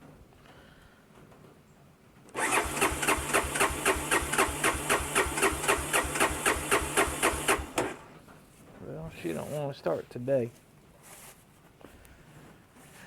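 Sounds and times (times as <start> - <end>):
engine cranking on starter: 2.3 - 8.2.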